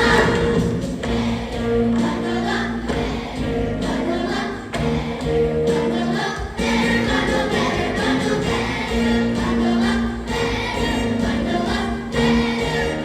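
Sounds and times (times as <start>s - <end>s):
choir singing: 0.0s - 13.0s.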